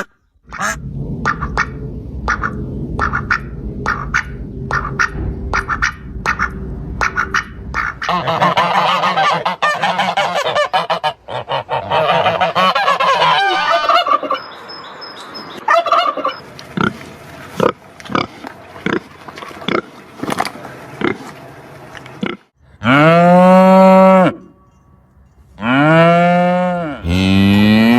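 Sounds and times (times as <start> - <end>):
geese honking: 0.0 - 1.7, 2.3 - 14.6, 15.5 - 16.4.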